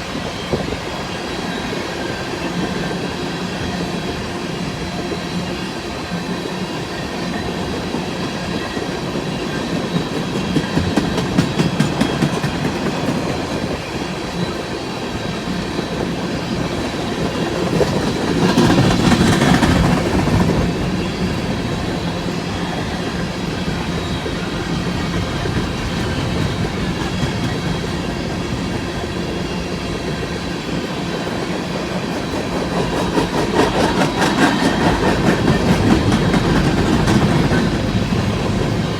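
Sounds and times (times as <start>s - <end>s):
train cars rumbling and rattling: 0.0s - 38.9s
wheels clacking over rail joints: 8.4s - 38.9s.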